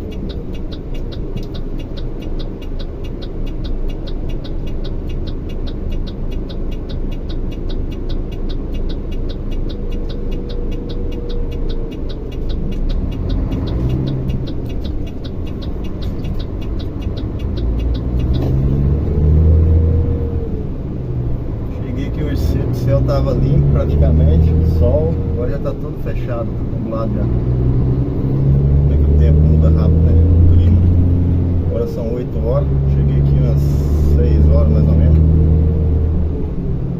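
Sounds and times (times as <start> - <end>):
fast regular ticking: 0.0 - 36.8
diesel truck engine running: 0.0 - 36.9
engine note rising: 9.7 - 36.9.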